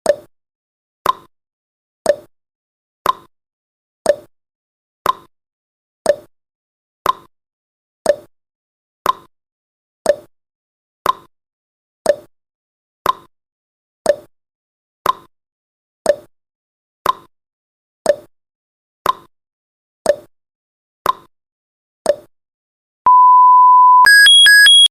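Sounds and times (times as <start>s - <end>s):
steady timer beep: 23.1s - 24.9s
timer ticking: 23.1s - 24.9s.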